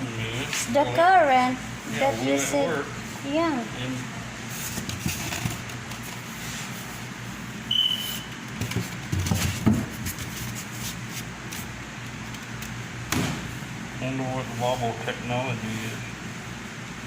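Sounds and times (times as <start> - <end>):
shop background noise: 0.0 - 15.0
short high electronic beep: 7.7 - 8.3.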